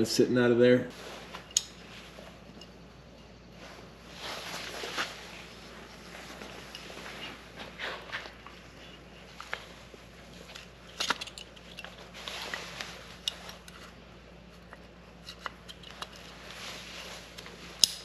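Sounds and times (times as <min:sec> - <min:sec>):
small metal parts clicking: 0:10.5 - 0:12.0, 0:15.2 - 0:16.3.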